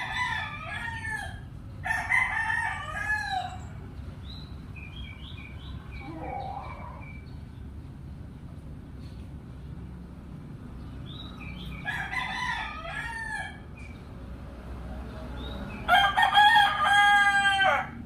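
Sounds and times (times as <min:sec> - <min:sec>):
rooster crowing: 0:00.0 - 0:03.8, 0:11.8 - 0:13.7, 0:15.8 - 0:18.0.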